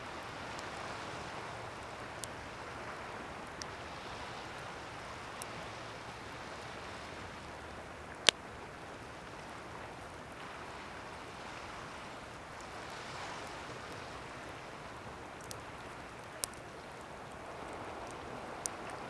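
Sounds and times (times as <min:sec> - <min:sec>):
ocean waves: 0:00.0 - 0:19.0
campfire crackling and popping: 0:00.1 - 0:19.0.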